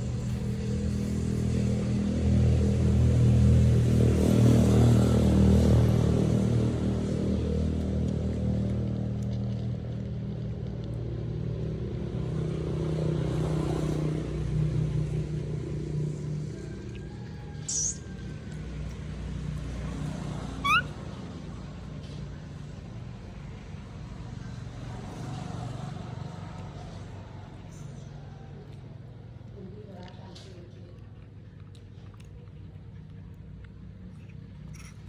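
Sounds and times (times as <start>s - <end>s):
quick rising chirp: 17.6s - 18.1s, 20.6s - 20.9s.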